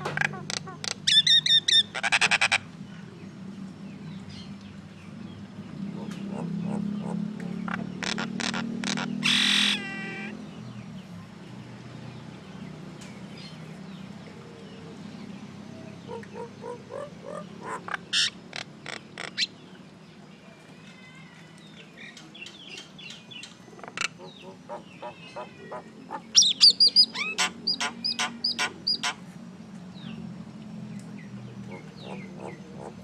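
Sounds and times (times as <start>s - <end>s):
myna bird squawking: 0.0s - 2.6s, 6.0s - 10.4s, 16.1s - 19.5s, 23.8s - 29.2s.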